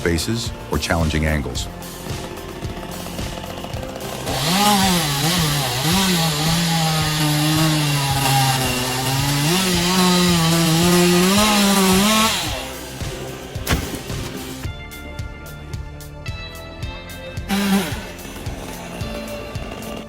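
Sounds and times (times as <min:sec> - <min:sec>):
chainsaw engine revving: 0:00.0 - 0:14.7, 0:17.4 - 0:20.0.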